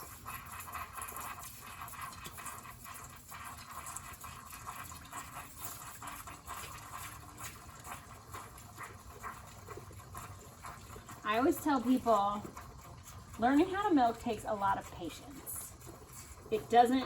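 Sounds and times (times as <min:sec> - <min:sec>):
milk squirting into jug: 0:00.0 - 0:17.0.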